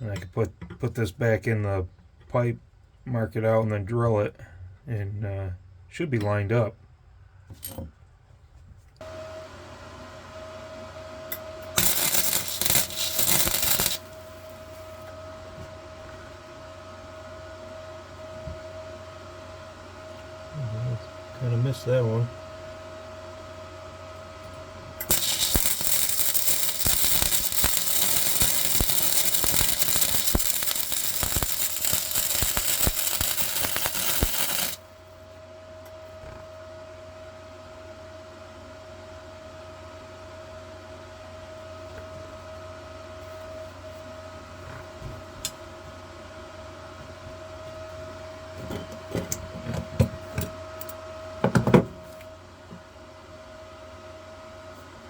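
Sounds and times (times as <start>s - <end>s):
steady hum: 9.0s - 36.0s
crackling welding arc: 11.8s - 14.8s, 25.0s - 34.8s.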